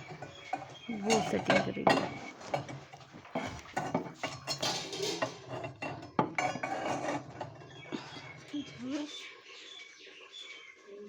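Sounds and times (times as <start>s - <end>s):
dishes and cutlery clattering: 0.0s - 8.8s.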